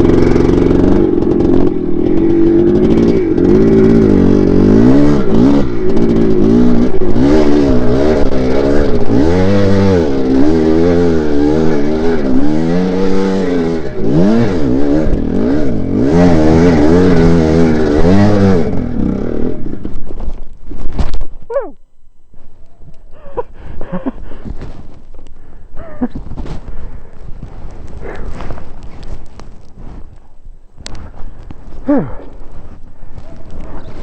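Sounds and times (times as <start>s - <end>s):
dirt bike engine revving: 0.0s - 20.2s.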